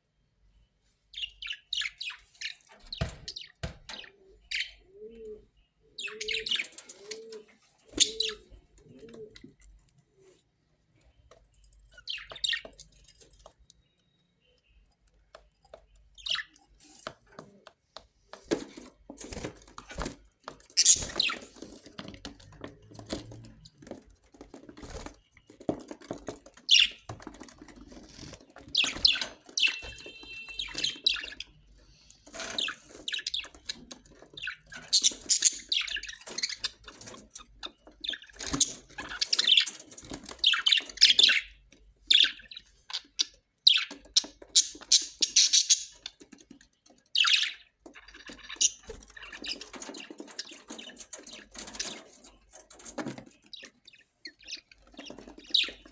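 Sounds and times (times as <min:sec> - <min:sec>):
parrots chirping and squawking: 0:06.0 - 0:07.2, 0:07.9 - 0:08.5, 0:19.4 - 0:41.5, 0:42.1 - 0:46.3, 0:47.2 - 0:52.1, 0:53.5 - 0:55.9.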